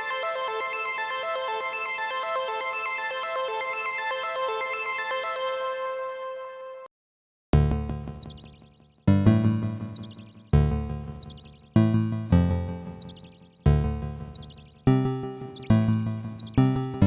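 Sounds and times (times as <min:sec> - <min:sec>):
synthesizer notes with falling zap: 0:07.6 - 0:17.0.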